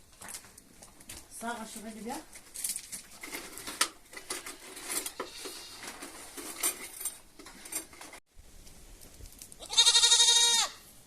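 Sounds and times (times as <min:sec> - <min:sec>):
metal dishes and utensils clinking: 0:03.2 - 0:08.2
goat bleating: 0:09.6 - 0:10.8.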